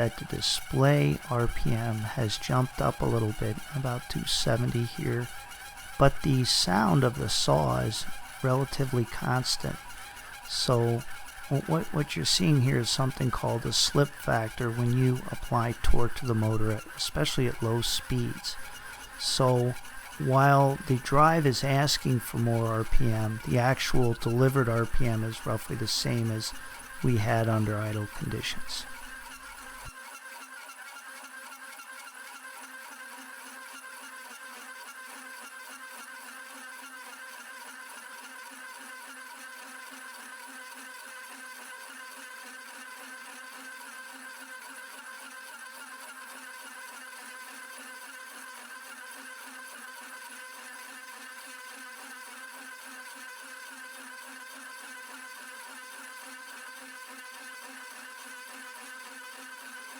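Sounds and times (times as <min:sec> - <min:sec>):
hole saw cutting steel whine: 0:00.0 - 0:29.9.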